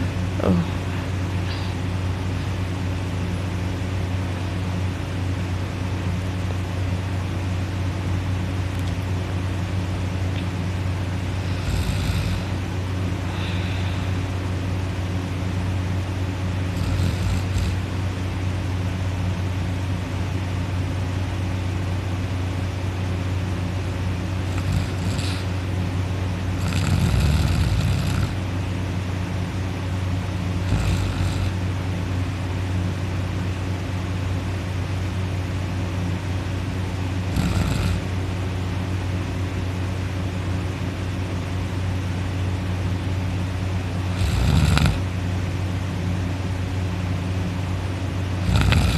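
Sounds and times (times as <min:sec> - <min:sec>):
steady low hum: 0:00.0 - 0:48.9
person snoring: 0:00.4 - 0:00.9, 0:11.3 - 0:12.6, 0:13.2 - 0:14.2, 0:16.7 - 0:17.9, 0:24.4 - 0:25.6, 0:26.6 - 0:28.4, 0:30.6 - 0:31.6, 0:37.3 - 0:38.1, 0:44.1 - 0:45.0, 0:48.4 - 0:48.9.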